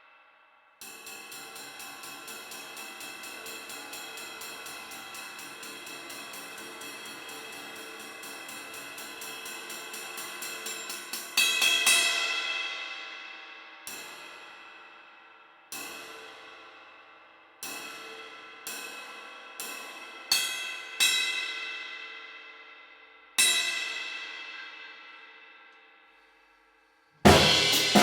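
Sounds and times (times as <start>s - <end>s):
cymbal crashes ringing: 0.8s - 13.3s, 27.3s - 28.0s.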